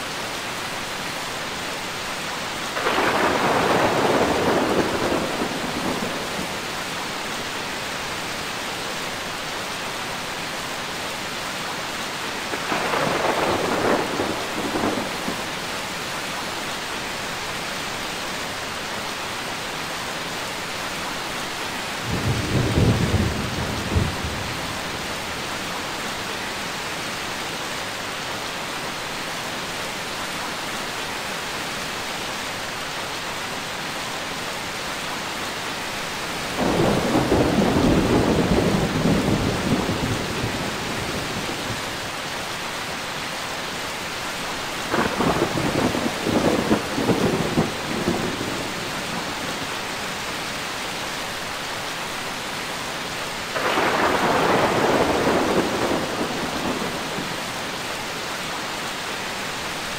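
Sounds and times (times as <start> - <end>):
steady rain: 0.0 - 59.9
rolling thunder: 2.8 - 6.6, 12.5 - 15.5, 36.5 - 41.8, 44.9 - 49.5, 53.6 - 57.4.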